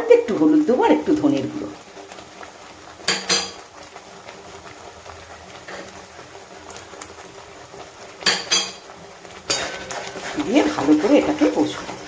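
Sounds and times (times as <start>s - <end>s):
metal spoon clinking on pan: 3.1s - 3.6s, 8.2s - 8.8s, 9.5s - 10.0s
spoon stirring and scraping: 9.5s - 12.0s.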